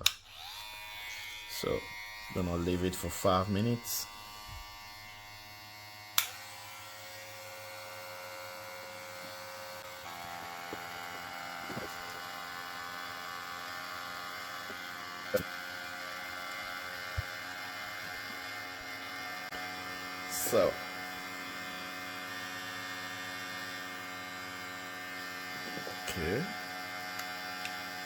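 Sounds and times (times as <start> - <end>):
electric hair clippers running: 0.0 - 28.0
sharp click: 6.2 - 6.4.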